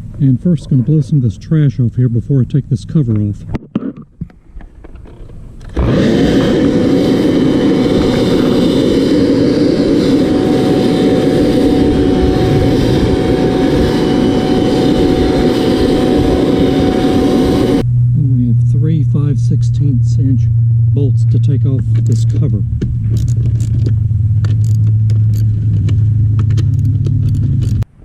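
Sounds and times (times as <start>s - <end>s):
blower whining with rushing air: 5.6s - 27.9s.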